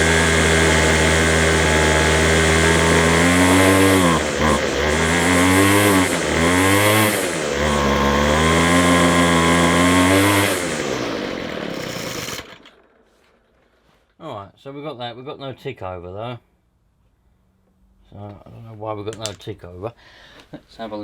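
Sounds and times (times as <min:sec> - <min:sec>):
strimmer engine running: 0:00.0 - 0:13.1.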